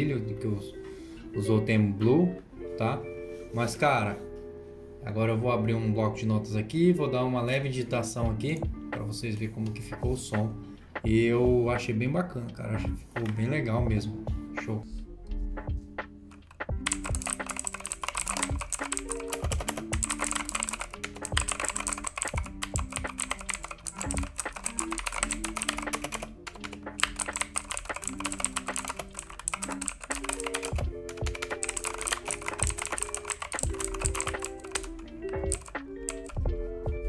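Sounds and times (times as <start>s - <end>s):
fast typing on mechanical keyboard: 16.4s - 36.4s.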